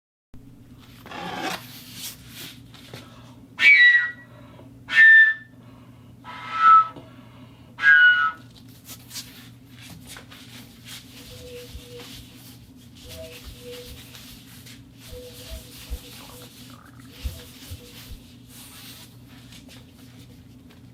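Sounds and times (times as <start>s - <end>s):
steady low hum: 0.4s - 20.9s
pipe whistling tones: 3.6s - 4.3s, 4.9s - 5.6s, 6.2s - 7.0s, 7.8s - 8.5s, 15.0s - 18.2s.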